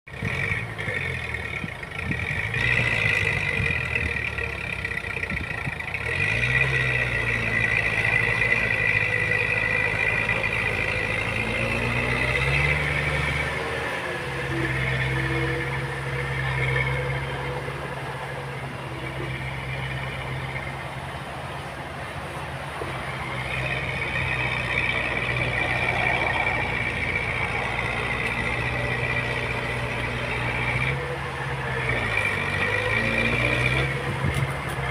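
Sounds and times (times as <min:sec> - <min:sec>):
heavy machinery diesel engine: 0:00.0 - 0:34.9
high whine: 0:07.1 - 0:34.9.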